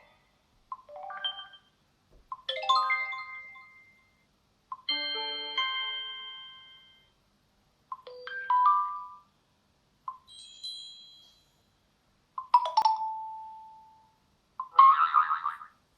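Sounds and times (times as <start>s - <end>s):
short electronic chime jingles: 10.3s - 11.6s.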